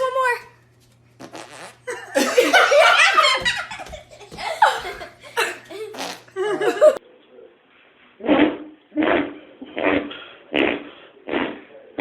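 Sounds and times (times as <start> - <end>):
loud laughter: 1.9 - 7.0.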